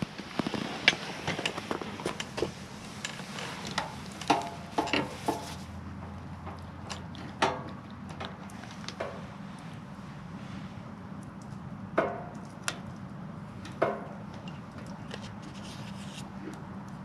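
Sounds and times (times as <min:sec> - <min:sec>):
clicks and knocks of objects: 0:00.0 - 0:09.2.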